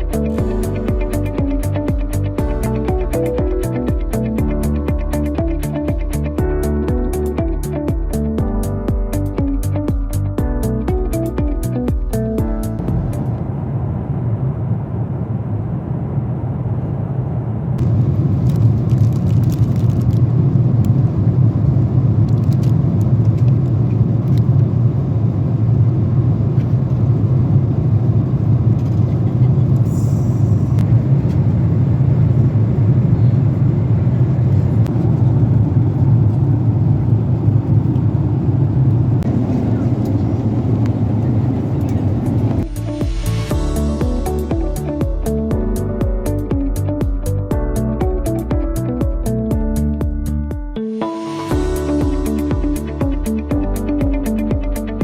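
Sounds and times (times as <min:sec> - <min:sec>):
airliner cabin rumble: 0:12.1 - 0:49.5.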